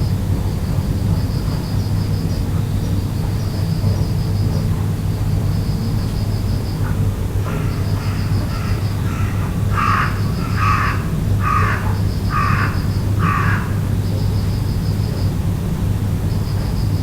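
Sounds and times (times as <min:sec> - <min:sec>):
crow cawing: 0:07.4 - 0:14.0.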